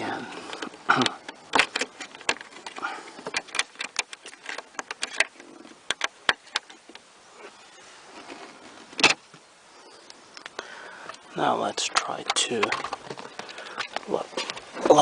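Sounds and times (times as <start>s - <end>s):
hard plastic parts clicking: 0.3s - 7.0s, 11.8s - 15.0s.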